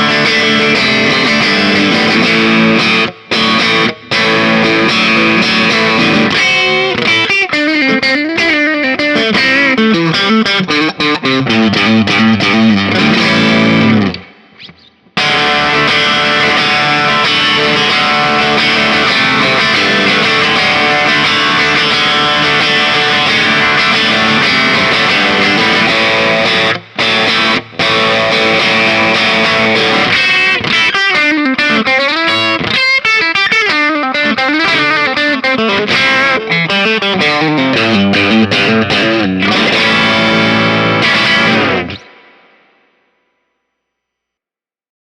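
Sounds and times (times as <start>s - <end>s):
overdriven electric guitar: 0.0s - 43.0s.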